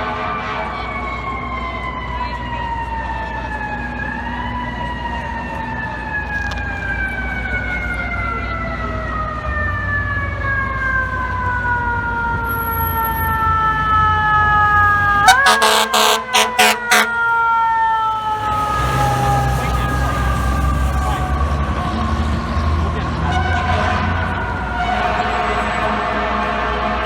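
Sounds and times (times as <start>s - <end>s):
engine and traffic rumble: 0.0s - 27.0s
fire truck siren: 0.0s - 27.0s
air horn blasts: 15.2s - 17.5s, 23.3s - 27.0s.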